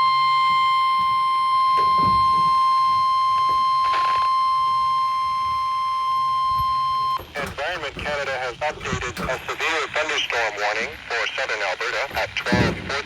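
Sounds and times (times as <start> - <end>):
steady electronic alarm tone: 0.0 - 7.3.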